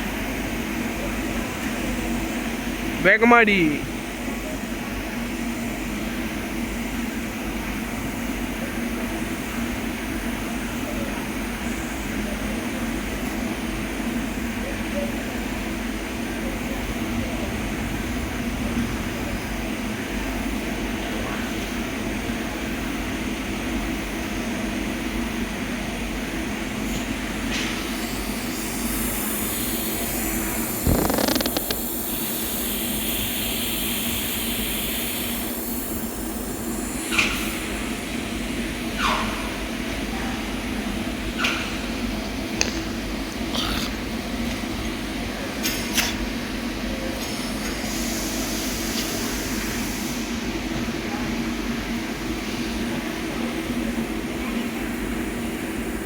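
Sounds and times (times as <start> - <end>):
welding arc hiss and hum: 15.2 - 50.6
high steady whine: 26.4 - 39.0.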